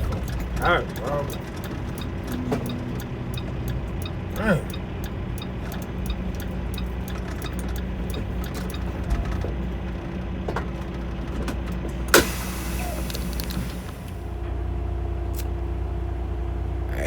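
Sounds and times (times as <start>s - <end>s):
light rapid ticking: 0.0s - 11.3s
diesel engine idling: 0.0s - 17.0s.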